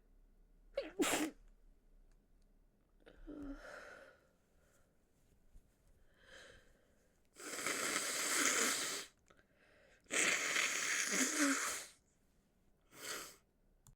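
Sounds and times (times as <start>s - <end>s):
woman blowing nose: 0.9s - 1.3s, 7.4s - 9.2s, 10.1s - 12.0s, 12.9s - 13.4s.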